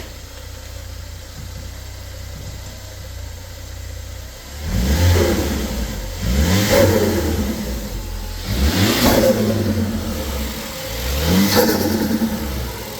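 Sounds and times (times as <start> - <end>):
car engine idling and revving: 0.0 - 12.9
hissing turbo flutter: 6.7 - 12.9.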